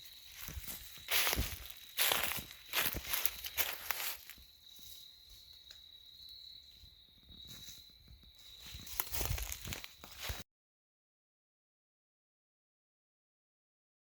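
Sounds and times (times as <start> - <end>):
footsteps crunching dry leaves: 0.0 - 5.1, 7.4 - 10.4
high-pitched insect drone: 0.0 - 10.4.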